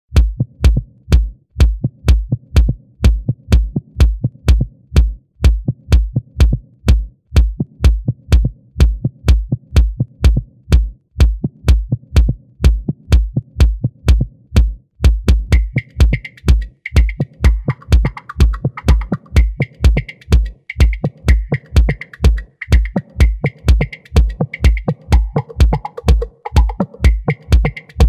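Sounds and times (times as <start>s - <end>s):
steady kick drum: 0.1s - 28.0s
sharp hi-hat clicks: 15.3s - 28.0s
electronic dance music: 15.5s - 28.0s.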